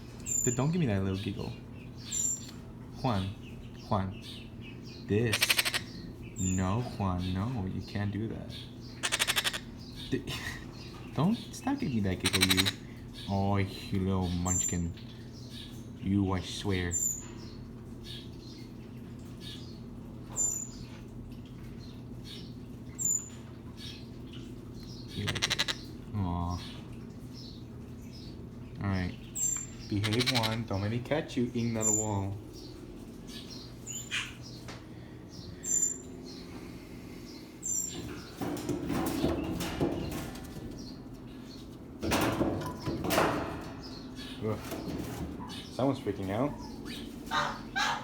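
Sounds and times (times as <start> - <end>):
steady low hum: 0.0 - 48.0
bird chirping: 0.2 - 13.4, 21.8 - 34.7, 35.3 - 41.8
parrot high-pitched squeaks: 5.3 - 6.0, 9.0 - 9.7, 12.2 - 12.8, 25.2 - 25.8, 30.0 - 30.6.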